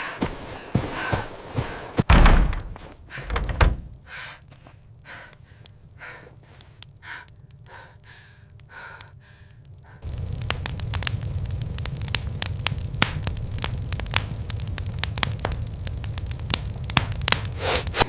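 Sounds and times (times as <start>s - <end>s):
heavy thuds: 0.2s - 4.0s
steady hum with crackling: 2.8s - 18.0s
breathy gasps: 5.0s - 10.0s.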